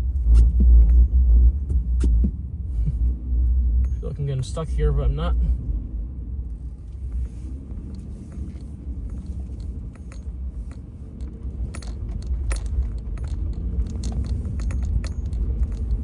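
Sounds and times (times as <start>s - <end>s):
car engine and tyres rumbling: 0.0s - 16.0s
small clicks and rattles: 6.9s - 16.0s.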